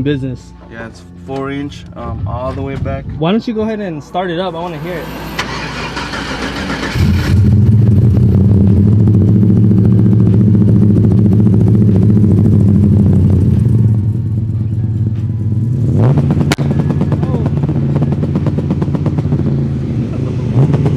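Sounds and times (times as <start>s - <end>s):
truck engine idling loud: 7.4s - 15.8s.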